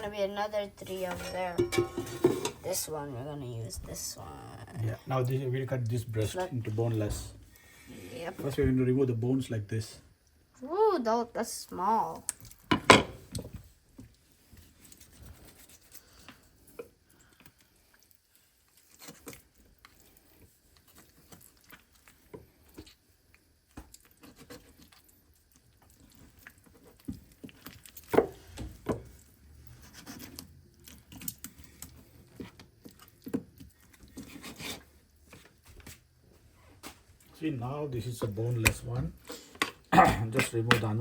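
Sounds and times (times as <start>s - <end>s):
knife scraping raw meat: 29.7s - 30.5s, 34.1s - 34.9s.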